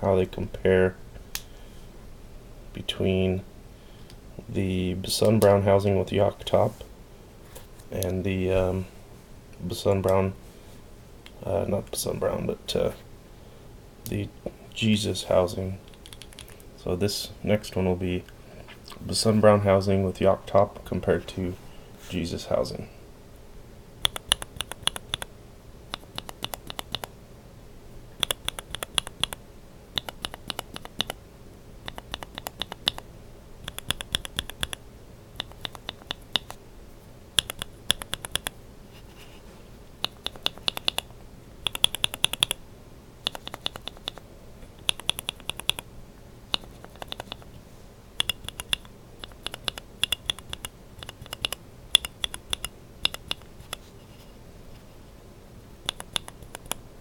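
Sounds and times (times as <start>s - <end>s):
keyboard switches clacking: 24.0s - 25.3s, 25.9s - 27.1s, 28.2s - 29.4s, 30.0s - 31.2s, 31.8s - 33.0s, 33.6s - 34.8s, 35.4s - 36.6s, 37.4s - 38.5s, 40.0s - 42.6s, 43.2s - 44.2s, 44.8s - 45.8s, 46.5s - 47.5s, 48.2s - 53.8s, 55.9s - 56.8s.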